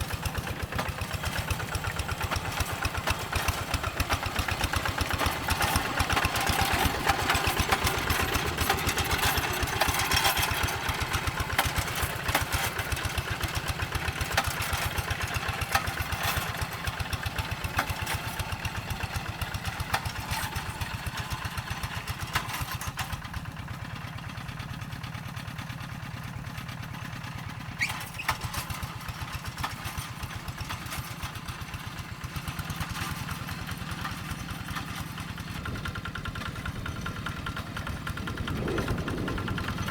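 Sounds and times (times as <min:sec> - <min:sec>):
diesel engine chugging: 0:00.0 - 0:39.9.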